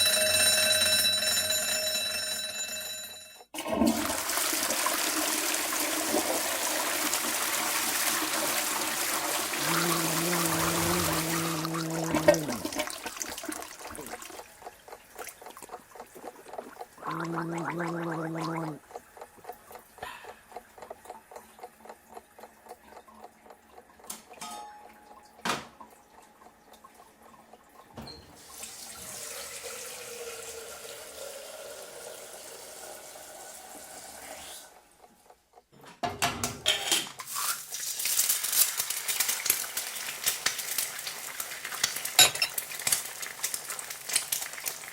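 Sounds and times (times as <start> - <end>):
water running: 0.0 - 20.4, 24.8 - 34.7.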